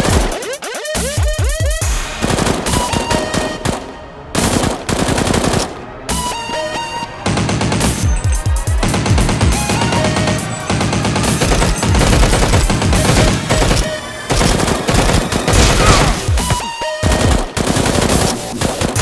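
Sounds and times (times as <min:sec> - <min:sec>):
background music: 0:00.0 - 0:19.0
automatic gunfire: 0:10.7 - 0:19.0.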